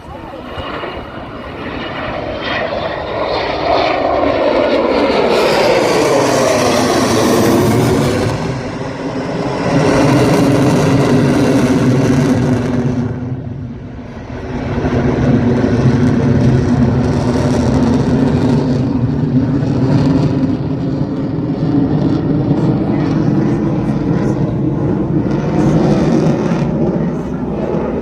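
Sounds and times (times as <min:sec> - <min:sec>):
jet flying past: 0:00.0 - 0:28.0.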